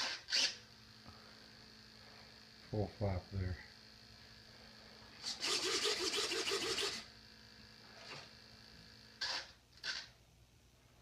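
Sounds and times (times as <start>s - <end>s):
small servos whirring: 0.0s - 0.7s, 5.1s - 7.2s, 7.8s - 10.2s.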